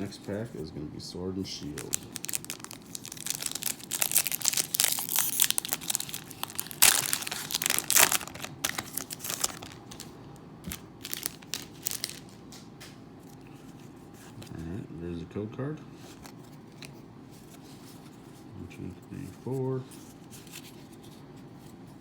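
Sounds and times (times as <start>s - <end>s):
foil wrapper crinkling: 1.5s - 12.7s
foil ripping: 1.6s - 10.1s, 10.7s - 12.4s.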